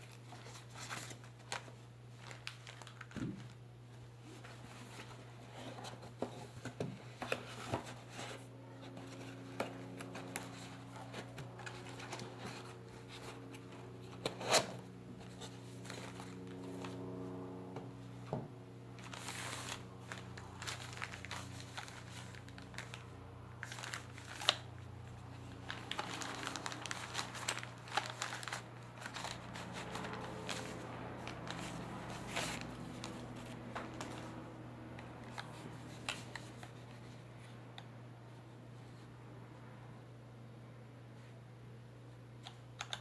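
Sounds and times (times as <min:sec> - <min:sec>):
plastic packaging crinkling: 0:00.0 - 0:03.6, 0:15.3 - 0:17.1, 0:18.9 - 0:36.8
steady low hum: 0:03.4 - 0:42.4.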